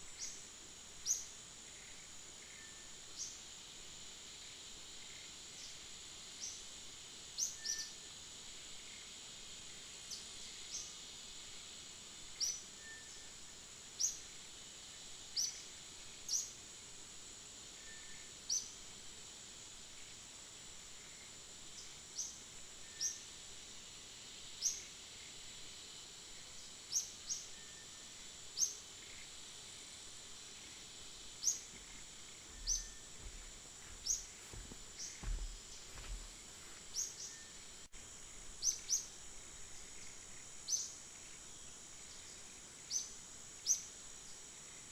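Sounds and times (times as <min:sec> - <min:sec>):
high-pitched insect drone: 0:17.6 - 0:19.0, 0:19.7 - 0:44.9
short rising bird chirps: 0:32.6 - 0:33.0.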